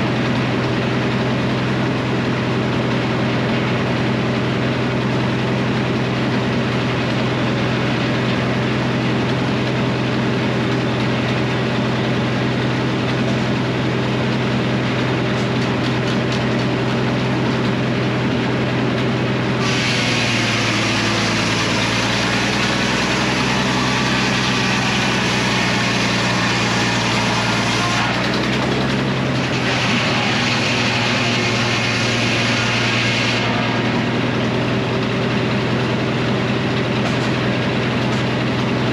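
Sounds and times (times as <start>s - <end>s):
sawmill engine running: 0.0s - 38.9s
circular saw cutting log: 19.4s - 38.9s.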